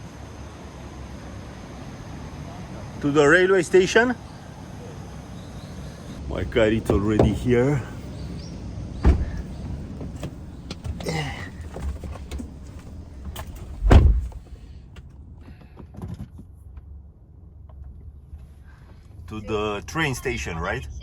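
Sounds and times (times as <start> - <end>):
car door shutting thud: 6.8 - 7.9, 9.0 - 14.6
knock on car door: 6.9 - 7.6.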